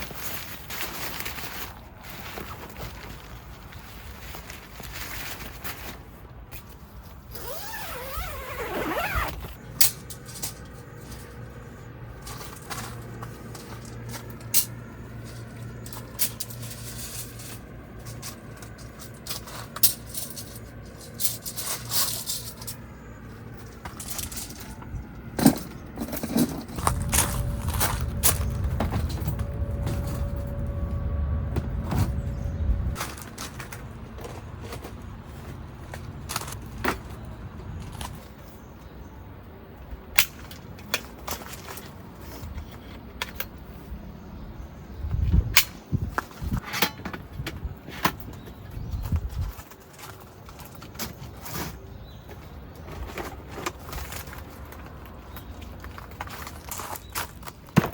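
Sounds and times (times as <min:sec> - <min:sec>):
rising squeak: 0:07.4 - 0:09.6, 0:25.8 - 0:33.3
objects clicking and scraping: 0:09.8 - 0:37.1
low rumble: 0:23.6 - 0:34.2.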